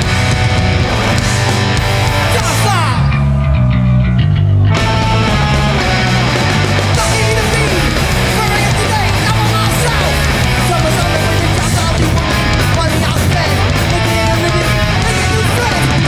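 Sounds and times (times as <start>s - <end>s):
punk band playing live: 0.0s - 16.0s.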